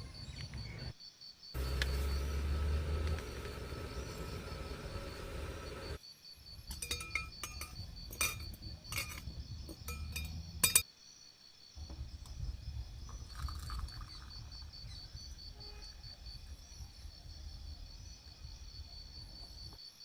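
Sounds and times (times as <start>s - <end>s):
cookware clinking: 6.7s - 10.8s.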